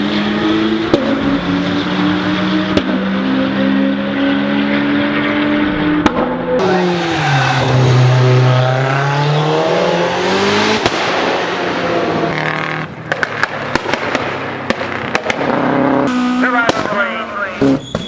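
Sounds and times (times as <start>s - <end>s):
exhaust pops and crackles: 13.0s - 18.0s
sharp bang: 16.1s - 18.0s.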